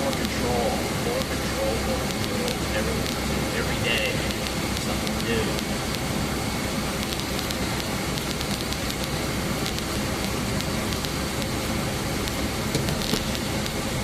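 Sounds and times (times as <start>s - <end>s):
car cabin rumble: 0.0s - 14.0s.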